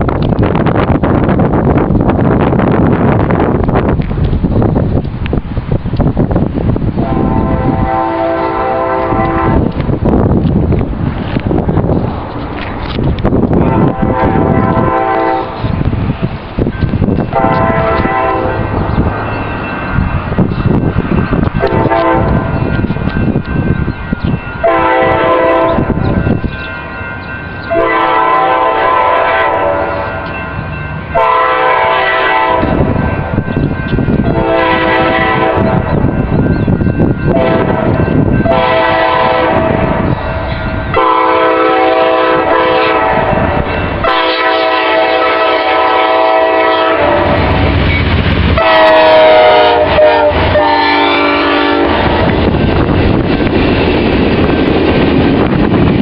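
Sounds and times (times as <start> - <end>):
train rumble: 0.0 - 56.0
train air horn blasts: 7.0 - 9.7, 13.6 - 15.6, 17.3 - 18.8, 21.6 - 22.6, 24.6 - 25.9, 27.7 - 30.2, 31.1 - 33.0, 34.2 - 36.0, 37.3 - 47.6, 48.6 - 52.3.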